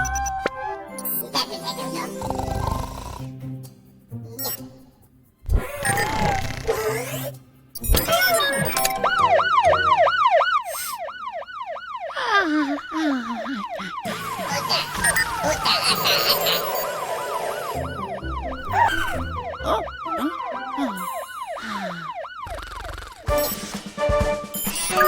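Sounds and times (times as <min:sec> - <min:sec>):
background music: 0:00.0 - 0:11.3, 0:14.1 - 0:22.0, 0:23.2 - 0:25.0
cartoon siren yelping: 0:08.0 - 0:23.3
falling glide tones: 0:14.1 - 0:21.9.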